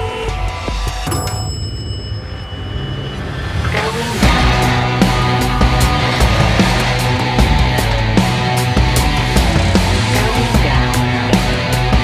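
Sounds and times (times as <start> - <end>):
heavy drums: 0.0 - 12.0
distorted guitar: 3.7 - 12.0
loud rock music: 3.8 - 12.0.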